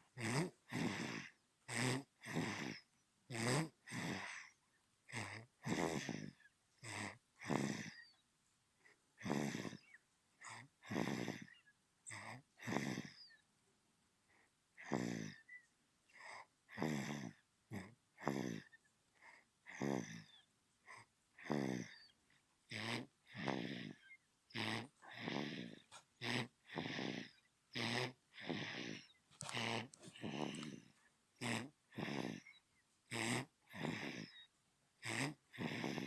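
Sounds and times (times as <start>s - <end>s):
baby snoring: 0.1s - 8.2s, 9.2s - 13.4s, 14.8s - 36.0s.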